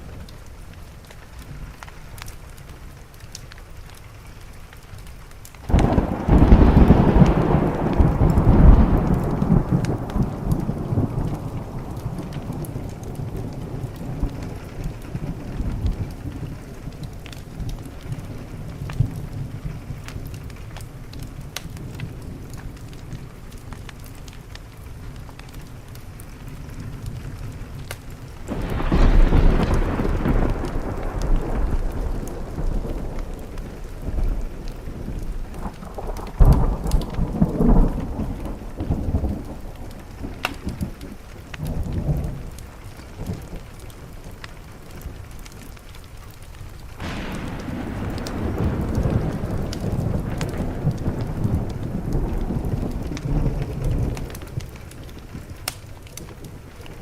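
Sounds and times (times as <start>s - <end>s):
steady rain: 0.0s - 57.0s
thunder rolling: 5.7s - 20.1s, 26.7s - 45.3s, 46.8s - 57.0s.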